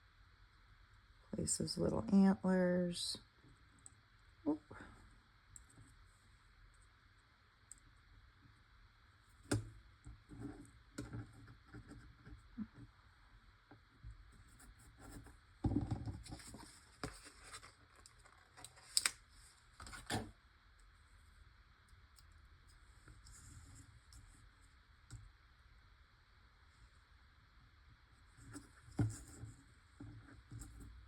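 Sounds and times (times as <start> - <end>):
hands handling cardstock: 16.3 - 19.2.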